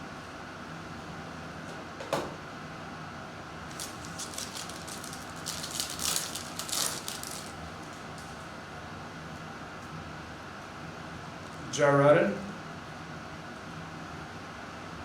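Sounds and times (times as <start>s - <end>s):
trading cards flicked and rustling: 3.7s - 8.4s.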